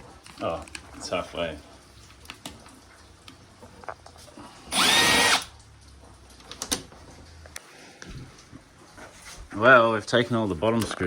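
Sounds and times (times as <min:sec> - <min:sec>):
drill-driver whirring: 0:04.7 - 0:05.5.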